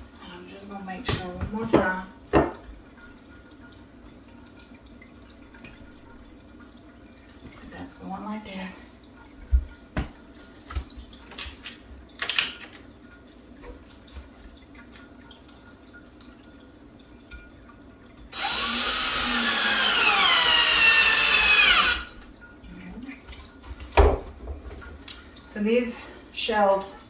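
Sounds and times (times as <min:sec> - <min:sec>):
power drill driving a screw: 0:18.4 - 0:22.1.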